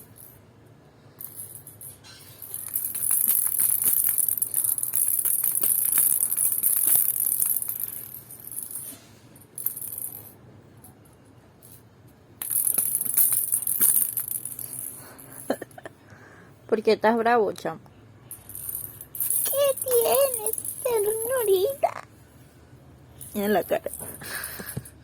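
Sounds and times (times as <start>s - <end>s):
toy rattle jingling: 1.2s - 10.4s, 12.4s - 15.9s, 18.3s - 22.0s, 23.1s - 25.0s.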